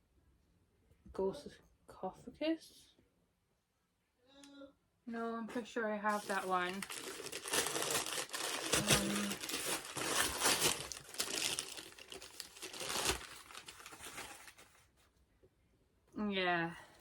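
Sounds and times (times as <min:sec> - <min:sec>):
packaging crinkling: 0:06.1 - 0:14.8.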